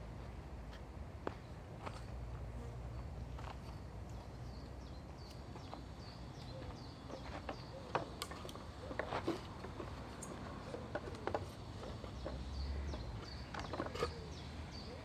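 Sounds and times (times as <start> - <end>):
bird chirping: 3.6 - 8.1, 10.2 - 15.0.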